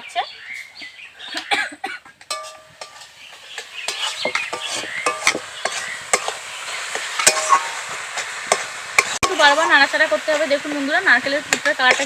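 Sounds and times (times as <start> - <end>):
soft sizzle: 1.3 - 12.0
utensil scraping a pan: 2.2 - 10.6.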